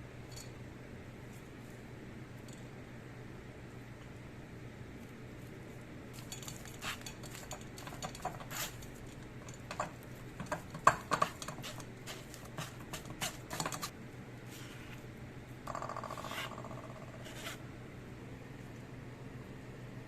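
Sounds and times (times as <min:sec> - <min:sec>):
utensils tapping and clicking: 0:06.2 - 0:13.9.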